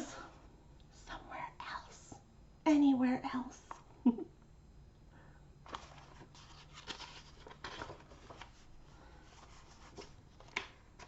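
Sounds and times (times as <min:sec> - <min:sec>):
paper rustling: 0:05.6 - 0:11.0.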